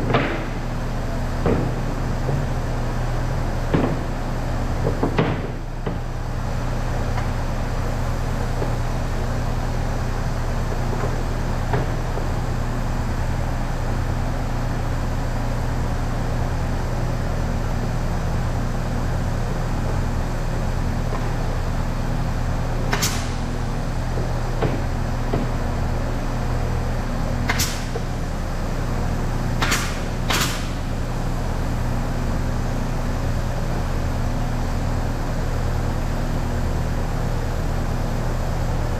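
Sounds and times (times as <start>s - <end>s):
factory machinery humming: 0.0s - 38.9s.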